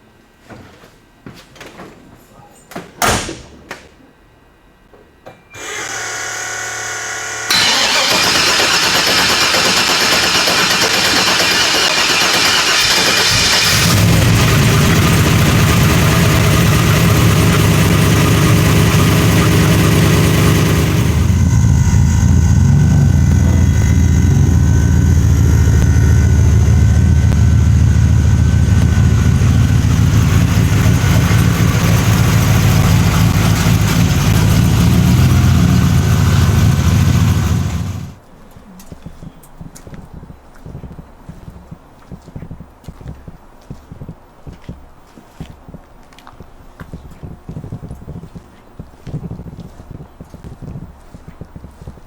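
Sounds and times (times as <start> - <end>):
engine idling with deep note: 6.0 - 38.2.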